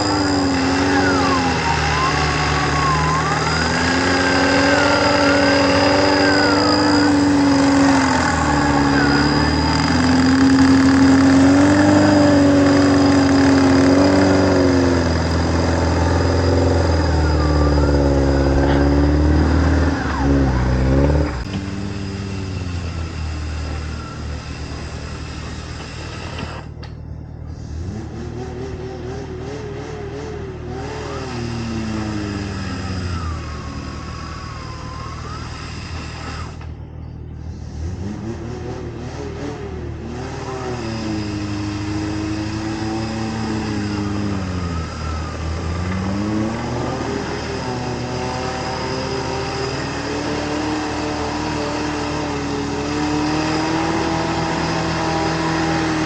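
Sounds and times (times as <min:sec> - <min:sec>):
engine revving under load: 0:00.0 - 0:56.0.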